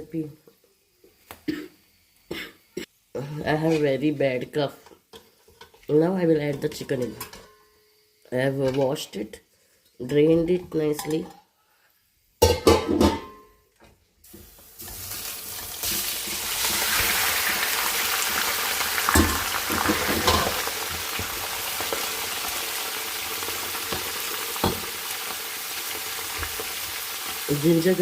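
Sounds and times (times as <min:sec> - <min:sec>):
chicken sizzling in hot oil: 0:14.2 - 0:28.0.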